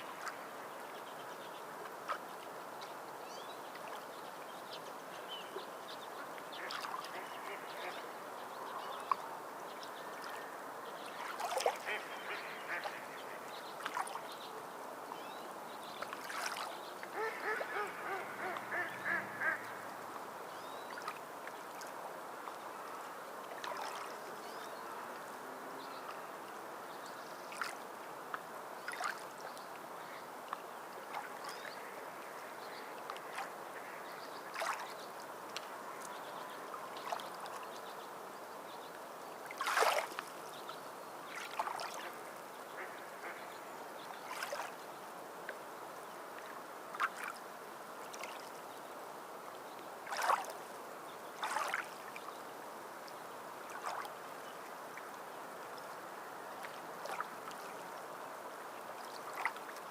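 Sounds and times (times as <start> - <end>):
waterfowl honking and quacking: 6.6 - 8.0, 11.6 - 13.2, 17.2 - 19.9.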